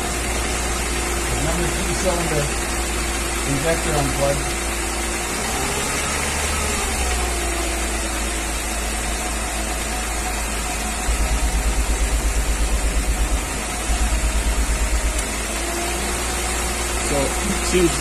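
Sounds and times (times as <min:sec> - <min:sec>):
car engine idling: 0:00.0 - 0:05.3, 0:06.1 - 0:18.0
low pulsing: 0:11.0 - 0:17.2
light metallic engine knock: 0:11.1 - 0:15.7.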